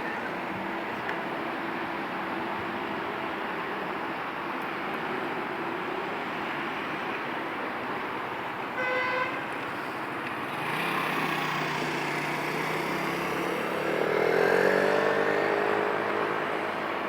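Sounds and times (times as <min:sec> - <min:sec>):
car horn toot: 0:08.8 - 0:09.5
cars driving past: 0:09.4 - 0:17.0.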